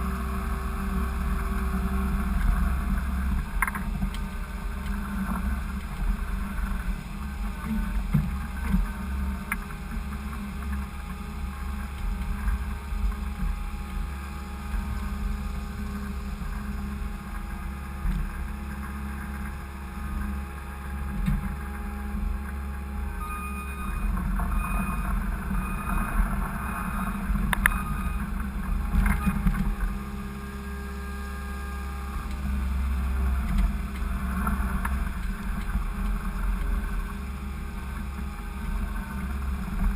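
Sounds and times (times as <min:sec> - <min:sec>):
skid steer engine running: 0:00.0 - 0:39.9
high beeps: 0:23.1 - 0:28.2.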